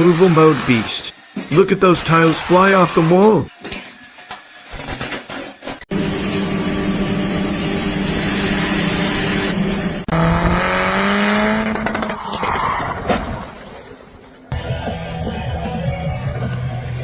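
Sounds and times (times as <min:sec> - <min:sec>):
vehicle engine running hard: 0:05.9 - 0:12.2
engine revving up: 0:08.2 - 0:12.3.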